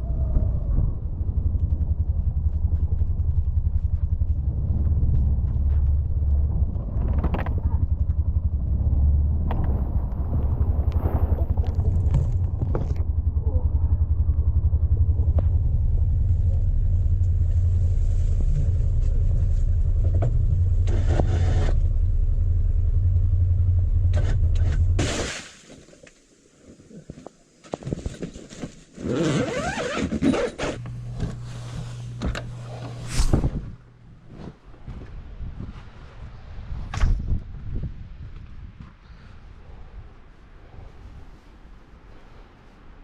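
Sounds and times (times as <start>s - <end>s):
vehicle engine running: 0.0s - 25.1s, 30.8s - 35.2s.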